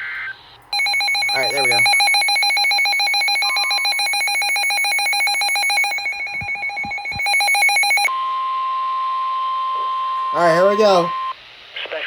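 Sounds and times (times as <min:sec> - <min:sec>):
steady warning alarm tone: 0:00.7 - 0:11.4
pulsing trilling alert tone: 0:03.3 - 0:08.1
low thumps: 0:05.9 - 0:07.6.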